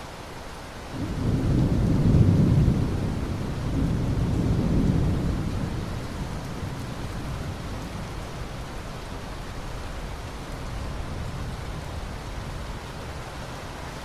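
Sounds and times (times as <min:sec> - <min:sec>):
steady rain: 0:00.0 - 0:14.0
thunder rumbling: 0:01.0 - 0:13.0.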